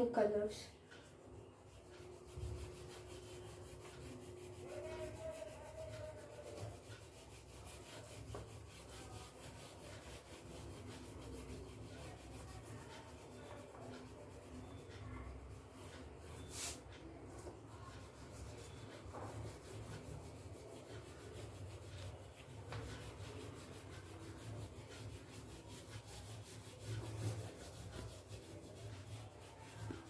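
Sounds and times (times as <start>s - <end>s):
oil pastel rubbing on paper: 0.9s - 15.0s, 17.7s - 30.0s.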